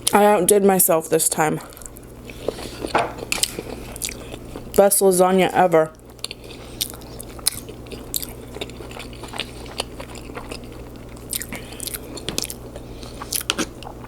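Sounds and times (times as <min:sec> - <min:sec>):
chewing and lip smacking: 0:01.7 - 0:04.8, 0:06.1 - 0:14.0.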